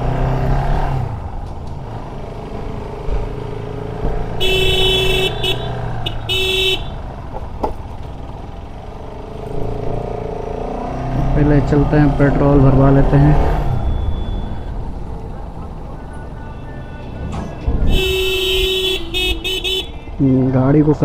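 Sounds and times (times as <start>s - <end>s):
engine and road noise: 0.0s - 21.0s
vehicle horn honking: 4.3s - 7.0s, 16.4s - 20.2s.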